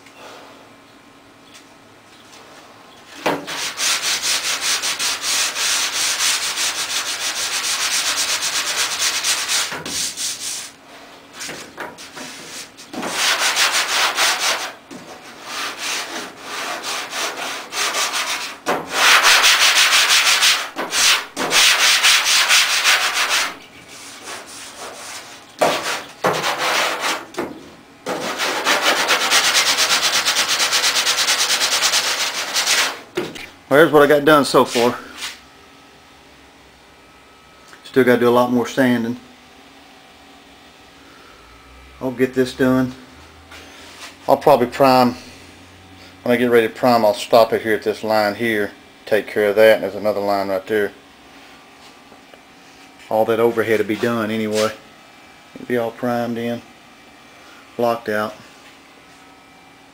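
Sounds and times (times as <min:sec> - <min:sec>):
sandpaper rasping on metal: 0:03.5 - 0:10.8, 0:11.4 - 0:27.2, 0:28.1 - 0:33.0.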